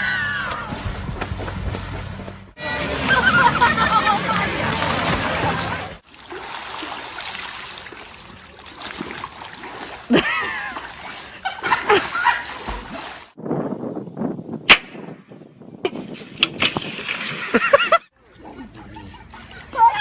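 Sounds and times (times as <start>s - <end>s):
water splashing: 0.0s - 13.4s
sharp crack: 14.7s - 15.2s.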